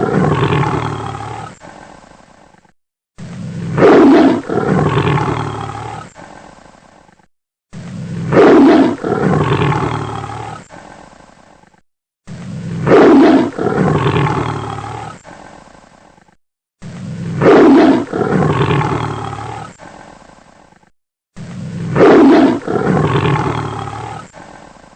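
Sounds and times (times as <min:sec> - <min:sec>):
tiger roaring: 0:00.0 - 0:01.9, 0:03.2 - 0:06.4, 0:07.8 - 0:10.7, 0:12.3 - 0:15.5, 0:16.9 - 0:19.9, 0:21.6 - 0:24.4.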